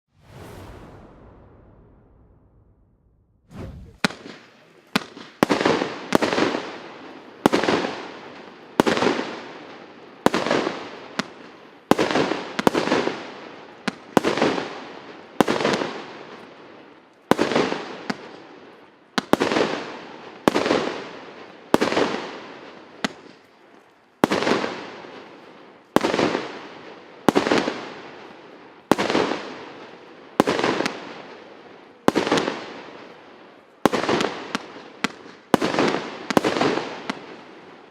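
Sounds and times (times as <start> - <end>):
fireworks bangs: 0.1 - 6.8.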